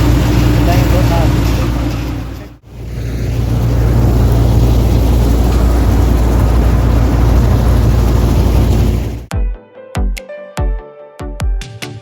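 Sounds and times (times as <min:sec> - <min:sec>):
combine harvester engine drone: 0:00.0 - 0:09.3.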